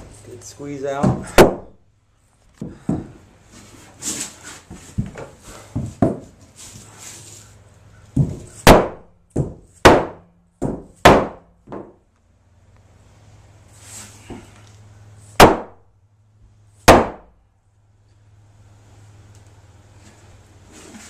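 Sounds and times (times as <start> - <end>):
mallet striking wooden boards: 1.0 - 1.8, 8.2 - 12.0, 15.4 - 15.8, 16.9 - 17.3.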